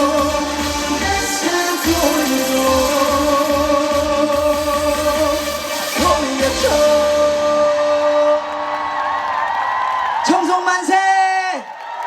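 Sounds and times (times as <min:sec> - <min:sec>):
drum beat: 0:00.0 - 0:07.1
live pop song with singing: 0:00.0 - 0:11.6.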